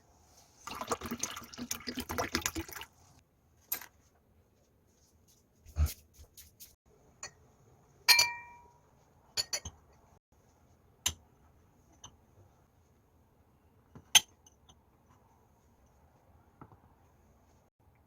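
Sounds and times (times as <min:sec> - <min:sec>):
dishes and cutlery clinking: 0:08.1 - 0:08.8, 0:09.4 - 0:09.8.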